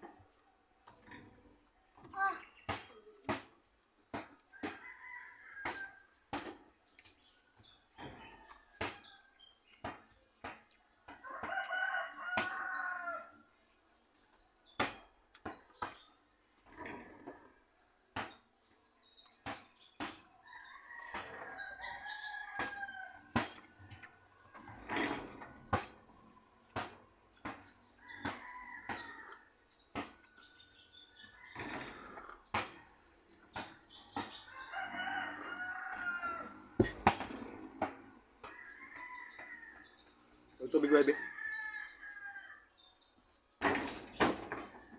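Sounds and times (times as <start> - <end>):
rooster crowing: 4.6 - 6.1, 11.2 - 13.4, 20.5 - 23.3, 28.0 - 29.5, 34.5 - 37.0, 38.4 - 40.0, 40.9 - 42.7.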